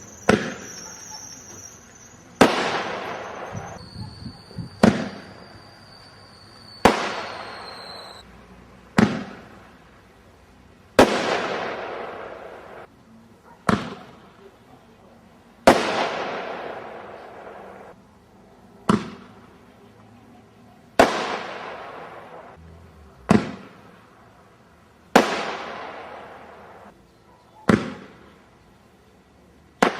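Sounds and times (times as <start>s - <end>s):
firework launch reports: 0.0s - 8.2s, 11.0s - 12.9s, 13.6s - 18.0s, 20.8s - 22.6s, 25.1s - 26.9s
firework shells bursting: 0.0s - 8.2s.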